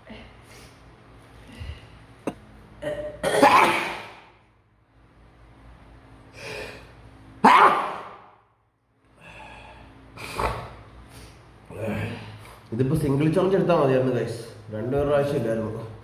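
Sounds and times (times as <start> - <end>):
person sneezing: 2.8 - 4.3, 7.4 - 8.2.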